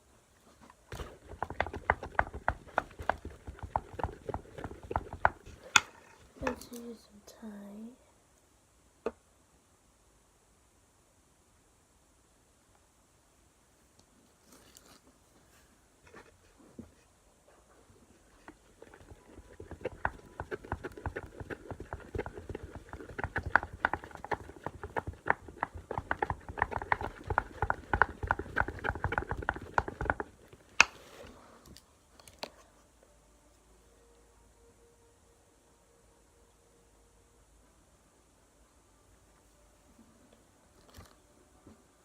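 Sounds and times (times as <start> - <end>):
slime squelching: 18.5 - 30.9.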